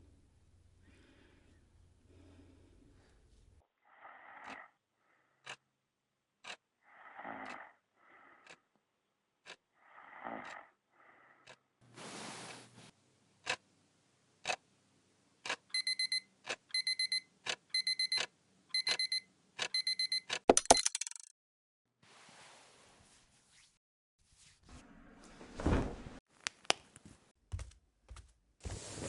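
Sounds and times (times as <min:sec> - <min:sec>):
clock ticking: 0:05.4 - 0:05.7, 0:06.4 - 0:06.7, 0:07.4 - 0:07.7, 0:08.4 - 0:08.8, 0:09.4 - 0:09.7
breathy sleeping breaths: 0:06.8 - 0:08.7, 0:09.7 - 0:11.7
digital alarm clock beeping: 0:15.7 - 0:20.9.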